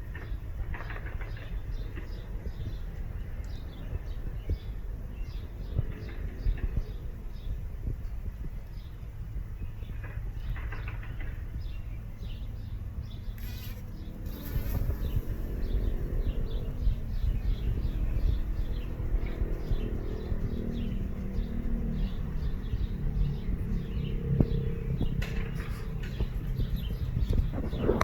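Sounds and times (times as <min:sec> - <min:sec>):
small bird chirping: 0:09.6 - 0:28.0
bee buzzing: 0:13.4 - 0:22.2.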